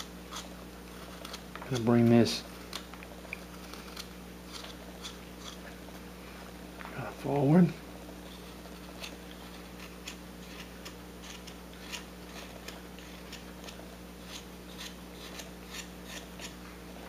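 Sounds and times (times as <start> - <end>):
knife shaving wood: 0.0 - 5.8, 8.2 - 16.6.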